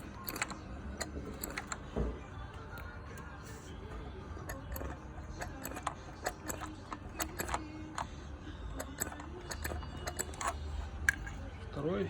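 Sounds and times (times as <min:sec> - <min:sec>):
sharp metallic clicks: 0:00.0 - 0:02.0, 0:04.0 - 0:11.4.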